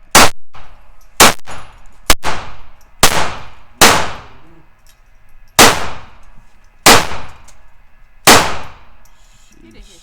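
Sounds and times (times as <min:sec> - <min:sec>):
gunshots with ringing tail: 0:00.1 - 0:04.6, 0:05.6 - 0:06.2, 0:06.8 - 0:07.5, 0:08.2 - 0:09.0.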